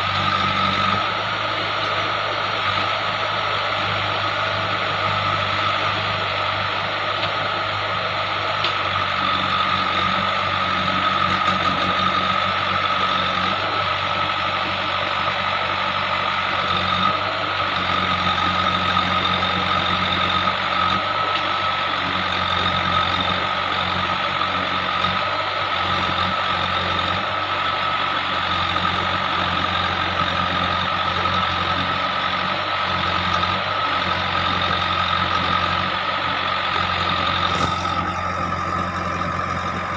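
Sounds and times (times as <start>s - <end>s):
diesel engine under load: 0.0s - 39.9s
high-pitched whine: 36.2s - 39.9s.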